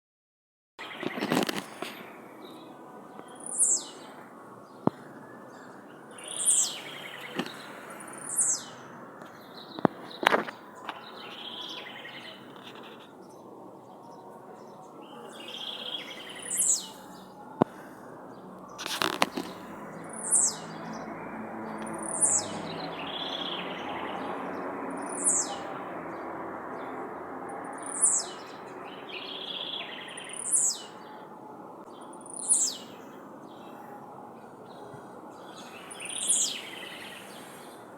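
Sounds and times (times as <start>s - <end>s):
bird twittering: 4.9s - 8.8s, 15.2s - 17.2s, 18.7s - 20.9s, 25.0s - 25.7s.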